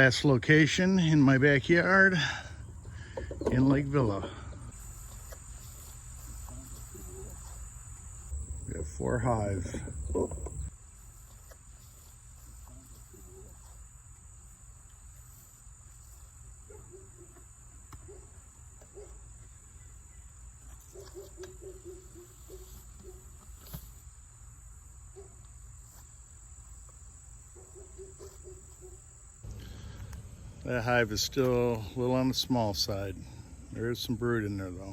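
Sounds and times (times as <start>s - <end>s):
steady high-pitched whine: 0.0s - 11.2s, 28.7s - 34.9s
honeybees buzzing: 3.7s - 10.7s
low rumble: 8.3s - 10.7s, 29.4s - 32.4s.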